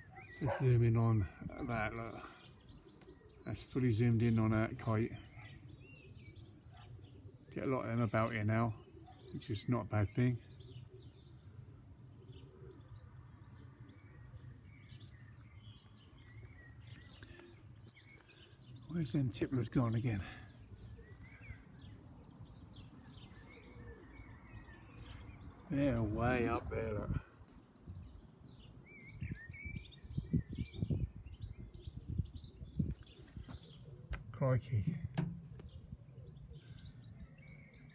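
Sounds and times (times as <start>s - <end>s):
small birds chirping and whistling: 0.0s - 37.9s
low rumbles: 34.1s - 36.1s.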